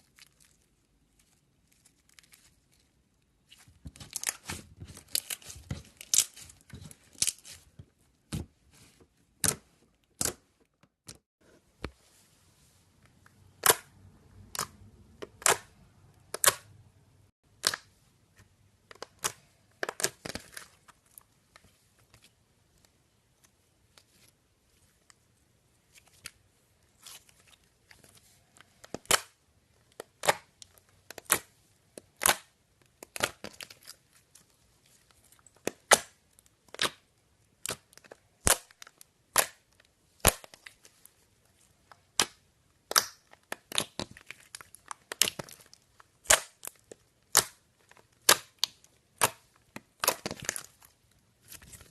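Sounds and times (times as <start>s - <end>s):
slime popping and snapping: 42.1s - 47.6s.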